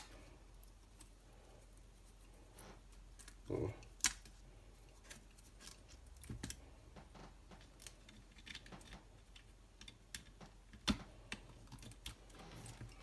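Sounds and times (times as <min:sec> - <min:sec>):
small parts clicking and knocking: 0:02.5 - 0:13.0.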